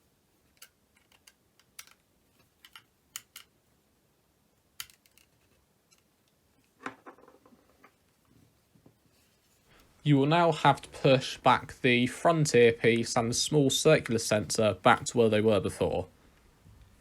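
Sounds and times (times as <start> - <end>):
plastic parts clicking: 0.5 - 3.5, 4.8 - 6.1
plastic parts rattling: 0.5 - 3.5.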